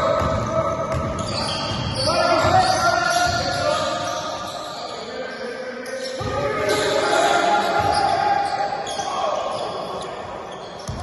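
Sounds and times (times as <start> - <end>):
basketball bouncing on court floor: 0.0 - 2.6, 10.8 - 11.0
voices in a hall: 0.0 - 11.0.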